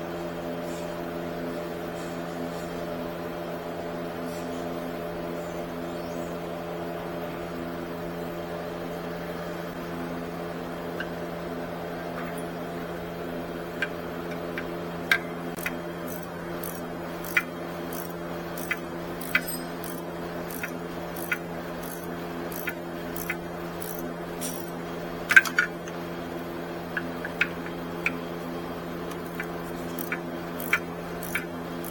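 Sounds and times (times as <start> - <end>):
steady mechanical hum: 0.0 - 31.9
sharp metallic clicks and clinks: 13.8 - 26.0, 29.1 - 31.9.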